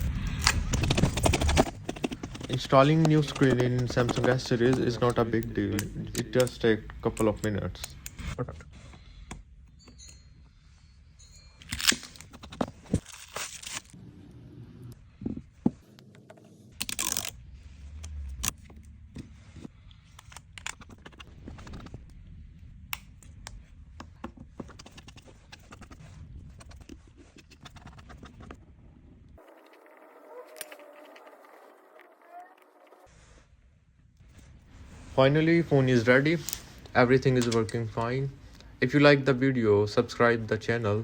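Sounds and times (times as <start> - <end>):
tools clicking and tapping: 1.6 - 8.3.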